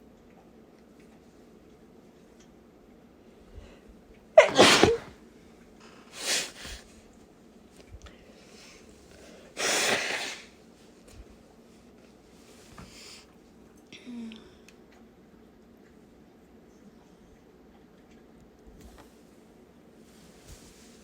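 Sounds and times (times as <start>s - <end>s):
woman sneezing: 4.4s - 5.1s, 9.6s - 10.5s.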